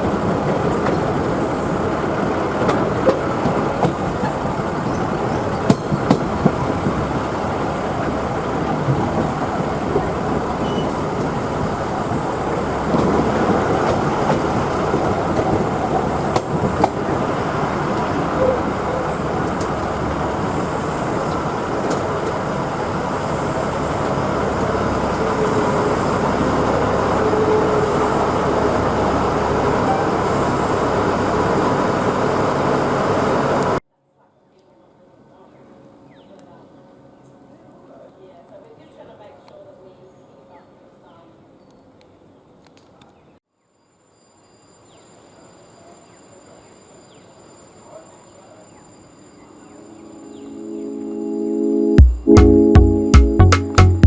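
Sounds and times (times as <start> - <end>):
train rumbling on track: 0.0 - 33.8.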